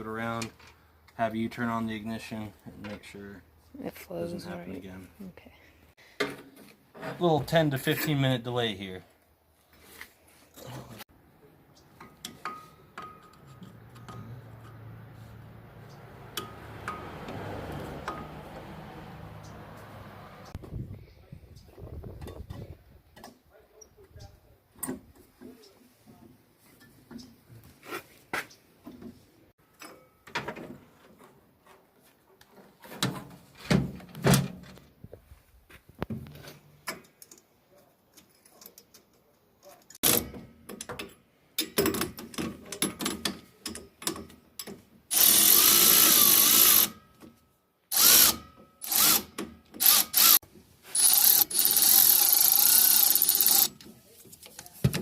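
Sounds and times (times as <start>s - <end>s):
hand tools clicking and clanking: 11.8s - 15.2s, 15.8s - 20.6s, 36.2s - 55.0s
power tool bursts: 40.0s - 40.3s, 45.1s - 47.0s, 47.9s - 53.7s.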